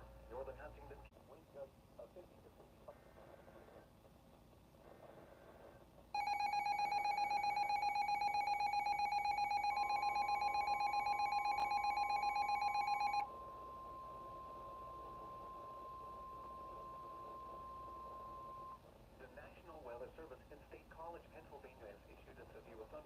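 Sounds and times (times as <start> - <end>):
high steady warning tone: 6.2 - 18.8
two-tone alarm: 6.2 - 18.8.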